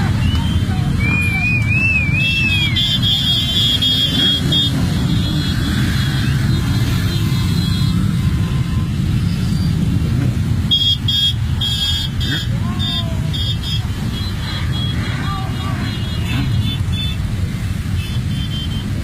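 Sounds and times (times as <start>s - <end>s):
motorcycle engines rumbling: 0.0s - 19.0s
warbling whistle: 0.2s - 3.3s
quick horn toots: 2.6s - 8.0s.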